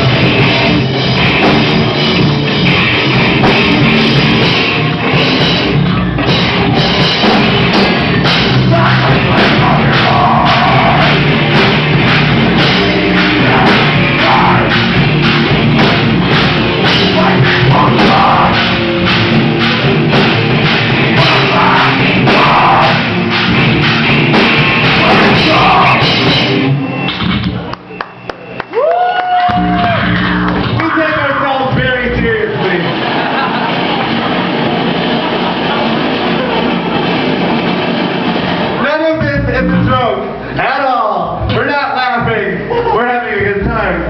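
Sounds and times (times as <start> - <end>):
drum kit: 0.0 - 44.0
rock band playing: 0.0 - 44.0
vocals: 8.2 - 19.1, 21.0 - 23.2, 24.8 - 26.4, 30.7 - 33.0, 38.8 - 44.0.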